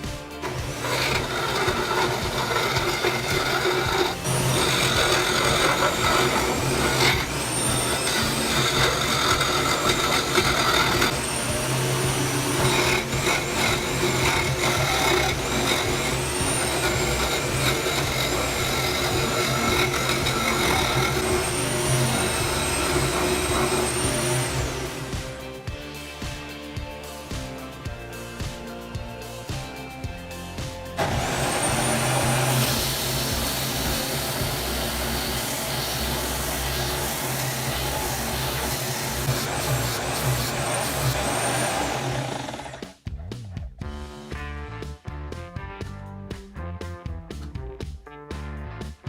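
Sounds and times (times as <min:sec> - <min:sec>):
sanding grinding noise: 0:00.3 - 0:25.6, 0:31.0 - 0:43.0
electric drill motor whine: 0:00.4 - 0:25.5, 0:31.0 - 0:42.9.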